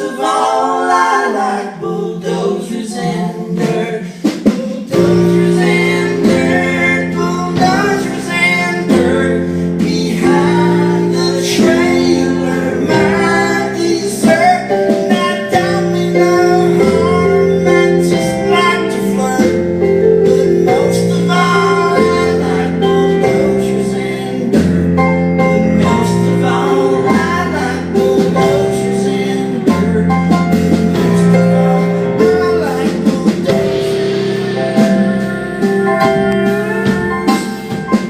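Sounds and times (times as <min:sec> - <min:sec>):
song with guitar: 0:04.1 - 0:38.0.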